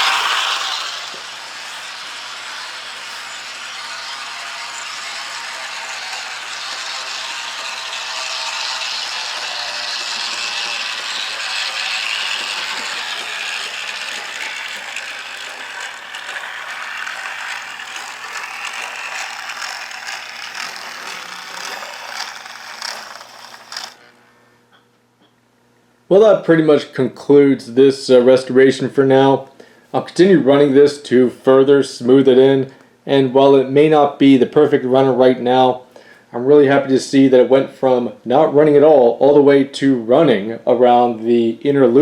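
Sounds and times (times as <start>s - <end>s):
model train motor whirring: 0.0s - 24.1s.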